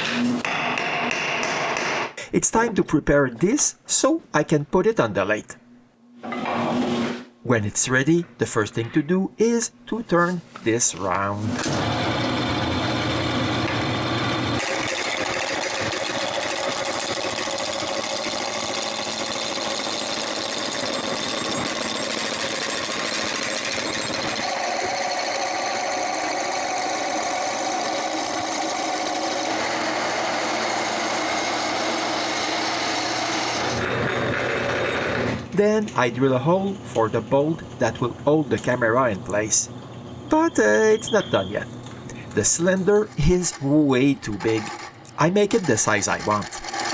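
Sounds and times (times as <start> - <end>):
wood lathe chattering against gouge: 14.6 - 35.3, 42.5 - 46.9.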